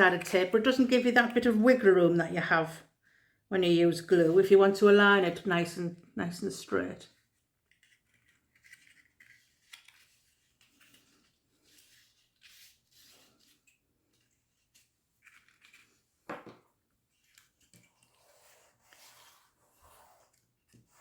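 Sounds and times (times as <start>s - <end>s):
paper card rustling: 7.2s - 16.2s.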